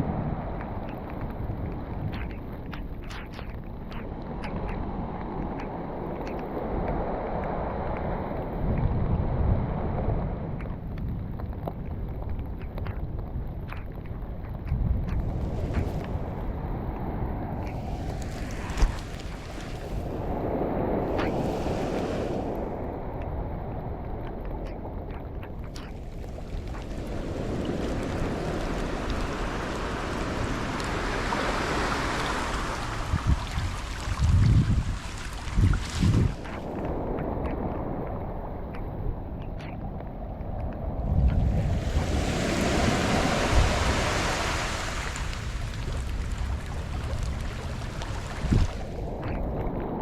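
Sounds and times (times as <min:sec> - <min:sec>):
surf washing on a beach: 0:00.0 - 0:50.0
wind buffeting the microphone: 0:00.0 - 0:50.0
rain tapping on device: 0:00.8 - 0:04.5, 0:10.6 - 0:20.2, 0:24.2 - 0:37.6.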